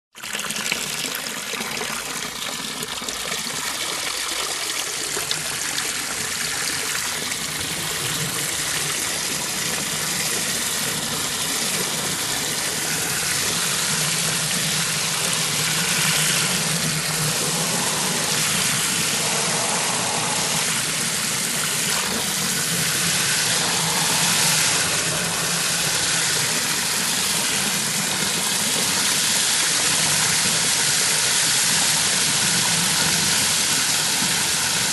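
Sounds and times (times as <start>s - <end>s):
garden hose spraying water: 3.6s - 34.9s.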